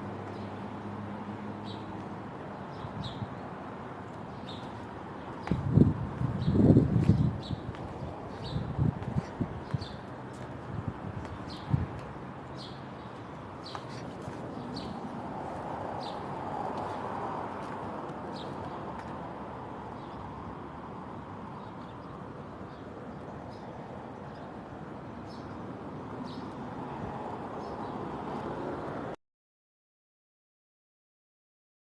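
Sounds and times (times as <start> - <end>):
small birds chirping: 4.1 - 15.2, 16.0 - 19.2, 21.5 - 26.6
strong wind rushing: 5.5 - 10.0, 10.6 - 12.0.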